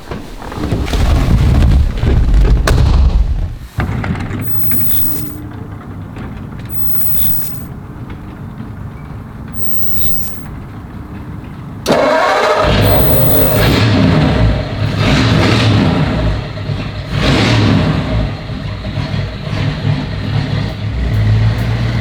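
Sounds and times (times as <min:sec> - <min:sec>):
car engine exhaust rumbling: 0:02.4 - 0:05.6, 0:12.6 - 0:22.0.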